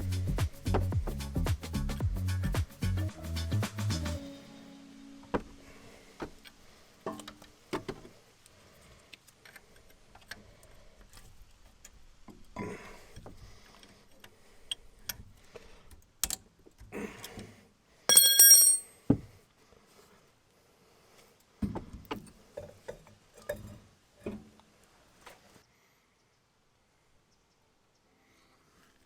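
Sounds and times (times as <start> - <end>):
loud ringing metal clink: 18.1 - 18.9.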